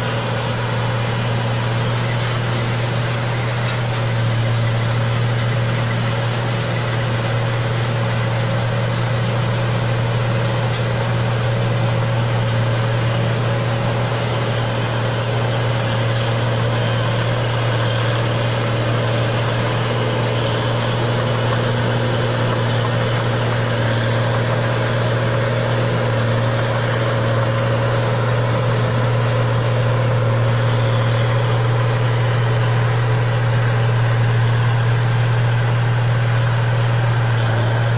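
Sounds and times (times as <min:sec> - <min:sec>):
engine droning: 0:00.0 - 0:37.9.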